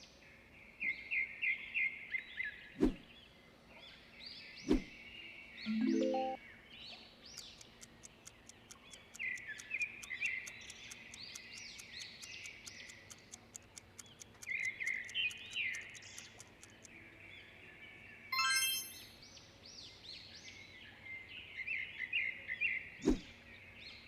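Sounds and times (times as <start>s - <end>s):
birds chirping: 4.3s - 19.1s
clock ticking rapidly: 7.4s - 16.9s.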